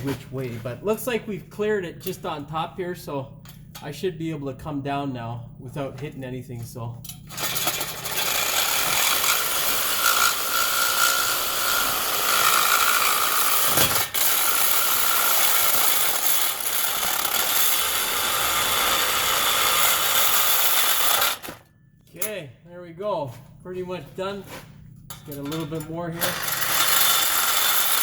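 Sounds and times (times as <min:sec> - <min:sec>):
power saw cutting steel pipe: 0:07.3 - 0:21.6, 0:26.2 - 0:28.0.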